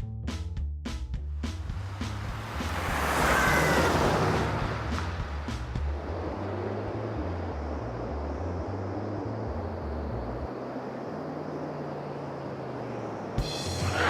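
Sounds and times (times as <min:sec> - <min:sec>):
low bass notes: 0:00.0 - 0:10.5
car road noise: 0:01.1 - 0:14.0.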